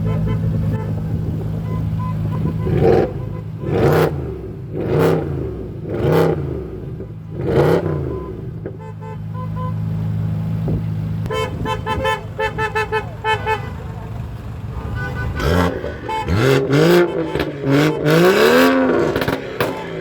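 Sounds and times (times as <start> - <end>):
car engine revving: 0.4 - 8.8, 14.6 - 20.0
exhaust bangs: 10.6 - 20.0.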